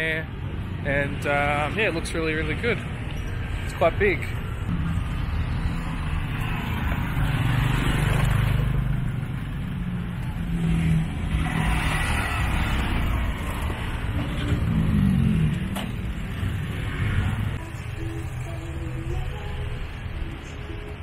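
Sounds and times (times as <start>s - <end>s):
vehicles passing close by: 0.0s - 21.0s
engine speeding up: 10.4s - 17.6s.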